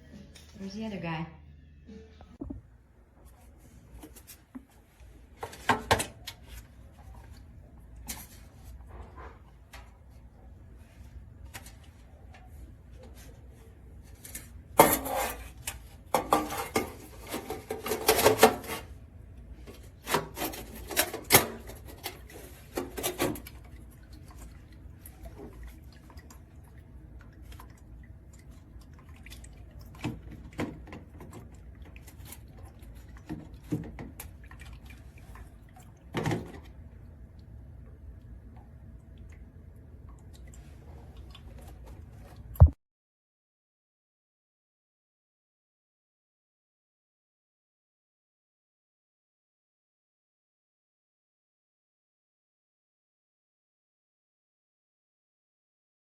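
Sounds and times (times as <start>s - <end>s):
dog lapping water: 19.9s - 42.5s.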